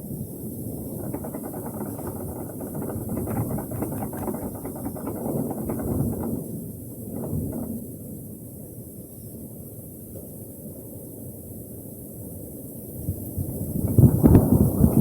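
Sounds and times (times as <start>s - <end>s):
wind gusting: 0.8s - 6.3s.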